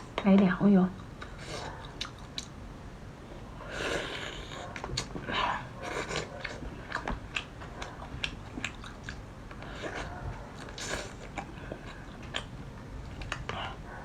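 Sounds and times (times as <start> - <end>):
biting and chewing: 4.4 - 14.0.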